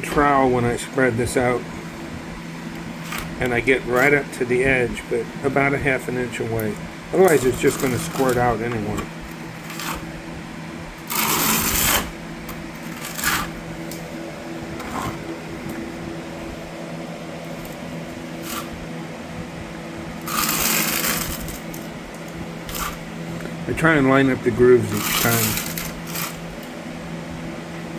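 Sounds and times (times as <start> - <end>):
steady low hum: 0.0 - 27.9
trowel scraping through mortar: 7.2 - 9.0, 11.0 - 12.2, 12.8 - 13.6, 18.4 - 18.8, 20.2 - 21.8, 22.6 - 23.0, 24.6 - 26.4.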